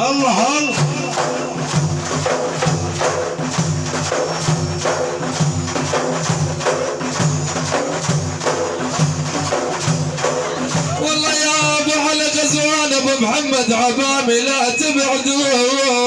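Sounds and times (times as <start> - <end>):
frame drum beating: 0.8 - 12.6.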